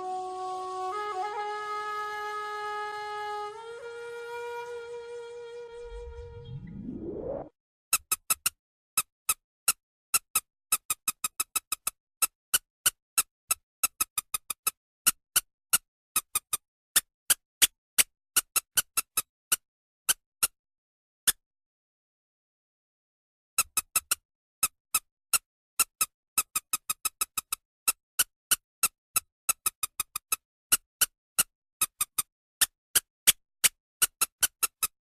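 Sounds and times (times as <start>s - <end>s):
rising swoop tone: 5.4s - 7.5s.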